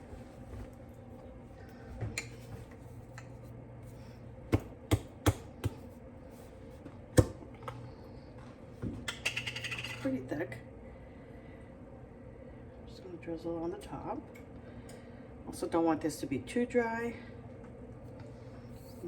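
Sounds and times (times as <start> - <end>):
kitchen items clicking and tapping: 9.0 - 10.1.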